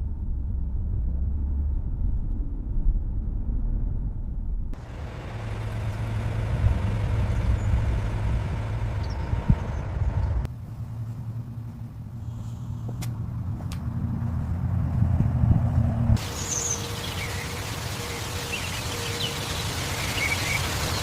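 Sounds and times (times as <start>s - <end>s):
car engine running: 4.8s - 12.3s.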